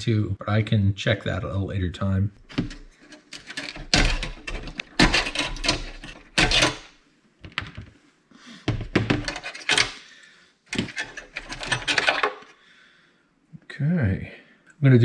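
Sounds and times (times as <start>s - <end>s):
small parts clicking and rattling: 2.5s - 6.9s, 8.8s - 10.0s, 10.7s - 12.6s.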